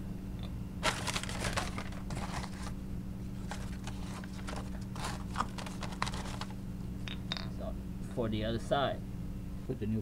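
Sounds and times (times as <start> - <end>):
steady low hum: 0.0 - 10.0
brake pads clicking and scraping: 3.4 - 6.6.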